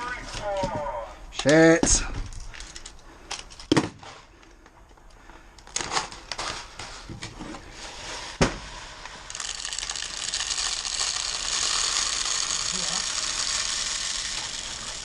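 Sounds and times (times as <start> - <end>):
fast mechanical ratcheting rattle: 9.3 - 15.0.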